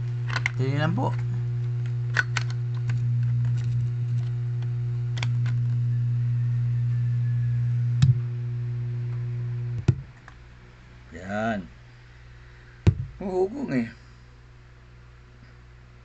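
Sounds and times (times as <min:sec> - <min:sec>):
electrical hum: 0:00.0 - 0:16.0.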